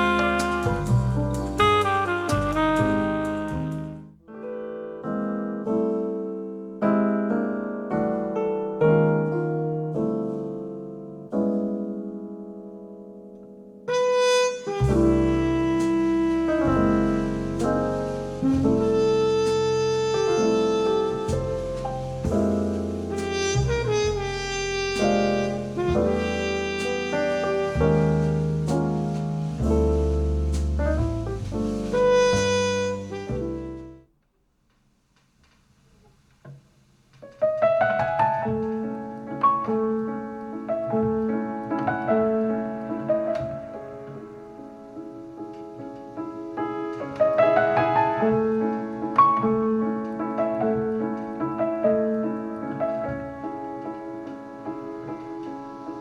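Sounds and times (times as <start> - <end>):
jazz saxophone: 0.0 - 4.2, 13.9 - 34.1
steady bass: 0.0 - 4.2, 14.8 - 34.0
piano: 0.0 - 34.2, 35.4 - 56.0
faint click: 34.2 - 35.6.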